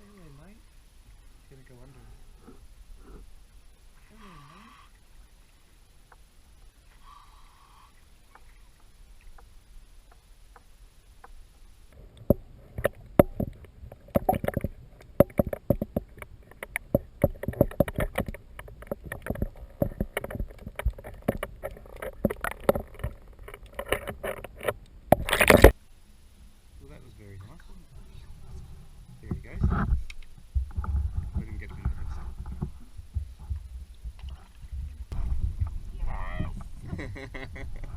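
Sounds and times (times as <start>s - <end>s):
kayak knocks and splashes: 12.2s - 25.8s.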